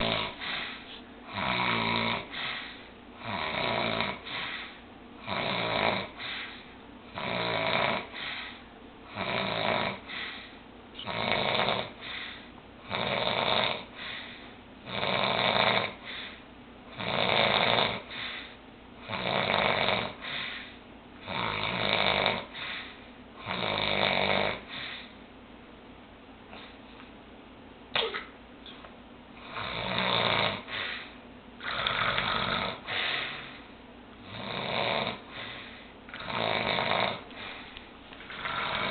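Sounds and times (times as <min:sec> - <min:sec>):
loud rasping snores: 0:00.0 - 0:00.6, 0:01.3 - 0:02.3, 0:03.2 - 0:04.5, 0:05.2 - 0:06.2, 0:07.2 - 0:08.1, 0:09.1 - 0:10.0, 0:11.0 - 0:12.0, 0:12.9 - 0:13.9, 0:14.9 - 0:16.0, 0:17.0 - 0:18.1, 0:19.0 - 0:20.3, 0:21.2 - 0:22.7, 0:23.4 - 0:24.6, 0:29.4 - 0:30.8, 0:31.6 - 0:33.5, 0:34.2 - 0:35.5, 0:36.1 - 0:37.6, 0:38.3 - 0:38.9.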